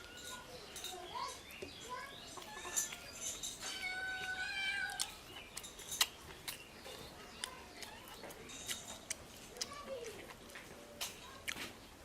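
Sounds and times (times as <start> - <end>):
cat meowing: 3.6 - 5.1.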